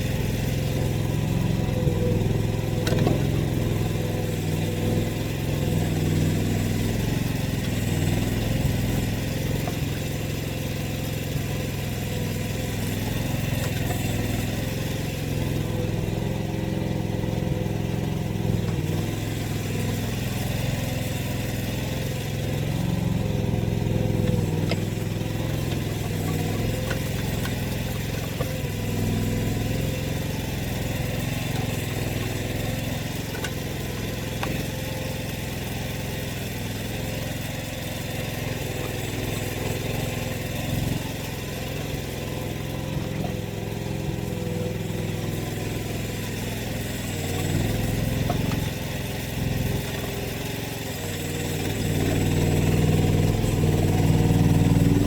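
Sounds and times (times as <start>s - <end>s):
excavator engine running: 0.0s - 55.0s.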